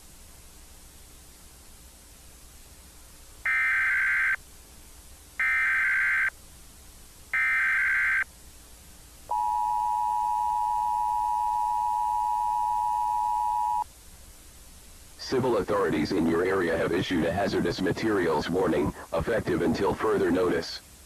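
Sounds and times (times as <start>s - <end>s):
two-tone attention signal beep: 9.3s - 13.8s.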